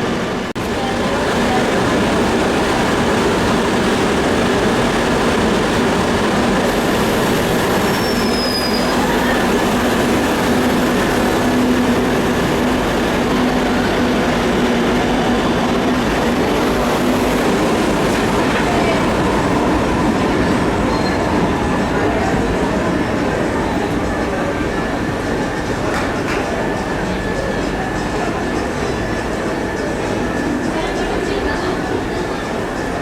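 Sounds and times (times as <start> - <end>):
electric train running: 0.6 - 33.0
high squeal: 7.7 - 9.5, 20.8 - 21.5.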